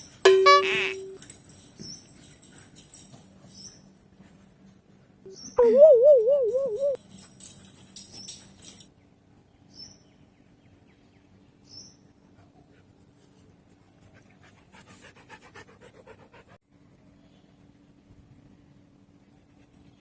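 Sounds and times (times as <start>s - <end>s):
short high chirps: 0.3s - 1.2s
dog panting: 14.0s - 16.6s.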